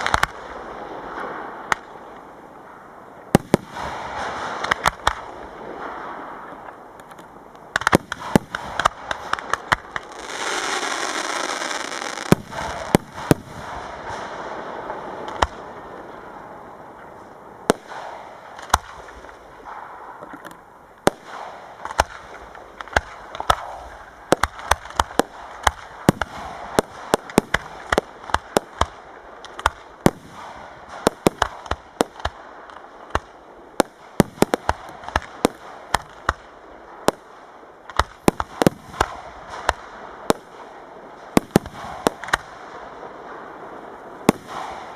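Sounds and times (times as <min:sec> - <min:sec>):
fireworks bangs: 0:00.0 - 0:44.9
loud rushing hiss: 0:08.1 - 0:16.0.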